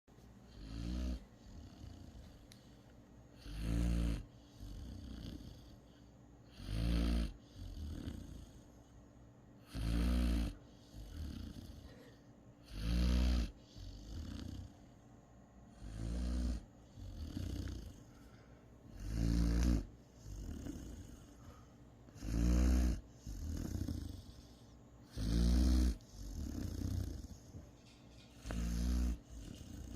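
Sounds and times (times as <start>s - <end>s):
quiet breath: 0.2s - 3.4s, 4.2s - 6.5s, 10.5s - 12.6s, 16.6s - 19.0s, 19.6s - 22.2s, 22.8s - 25.1s
puppy snoring: 0.4s - 29.9s.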